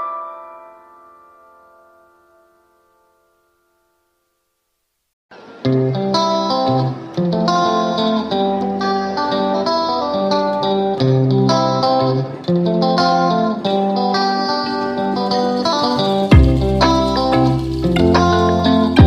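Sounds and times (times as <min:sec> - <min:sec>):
guitar music with steady beat: 0:05.4 - 0:19.0.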